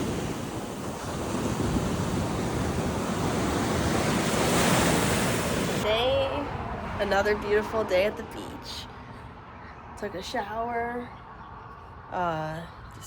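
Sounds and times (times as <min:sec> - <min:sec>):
surf washing onto beach: 0:00.0 - 0:05.8
wind buffeting microphone: 0:00.0 - 0:07.8.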